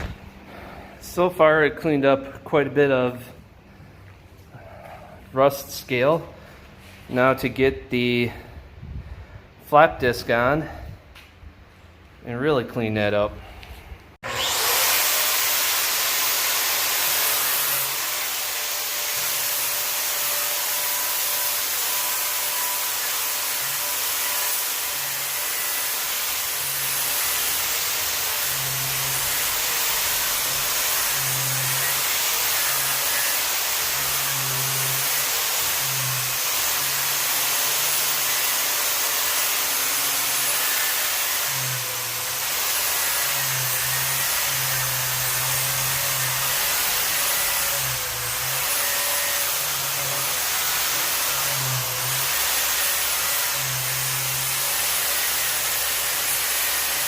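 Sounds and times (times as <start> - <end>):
angle grinder grinding steel: 14.2 - 57.0.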